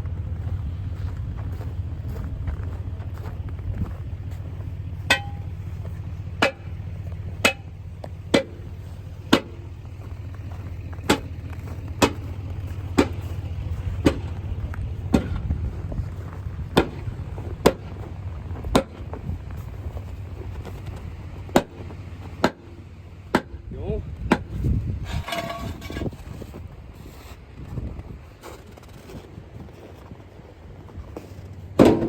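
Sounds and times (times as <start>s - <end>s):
steady low hum: 0.0s - 28.4s
hammer striking metal rims: 5.1s - 5.5s, 6.4s - 6.7s, 7.4s - 7.7s, 8.3s - 8.6s, 25.0s - 26.1s.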